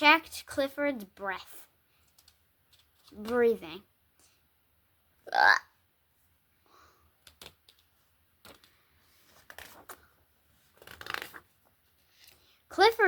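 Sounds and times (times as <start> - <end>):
paper pages turning: 2.1 - 3.6, 7.2 - 12.6.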